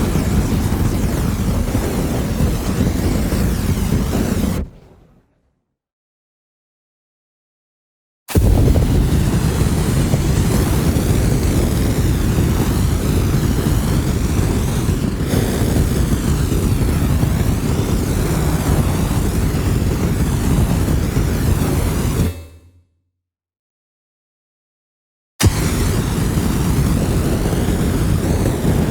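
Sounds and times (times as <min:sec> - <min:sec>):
large fire roaring: 0:00.0 - 0:05.2, 0:08.3 - 0:22.3, 0:25.4 - 0:28.9.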